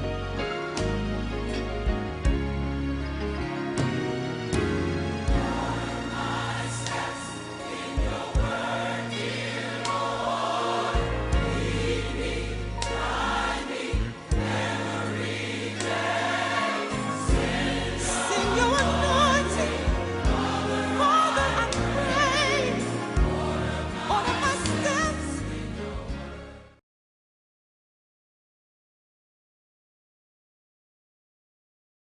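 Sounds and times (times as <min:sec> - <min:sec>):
steady bass accompaniment: 0:00.0 - 0:26.8
gospel choir singing: 0:03.8 - 0:26.8.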